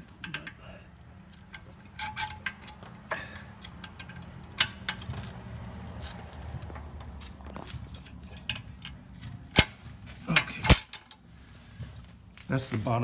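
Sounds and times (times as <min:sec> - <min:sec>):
screwdriver clicking on metal: 0:01.4 - 0:05.1.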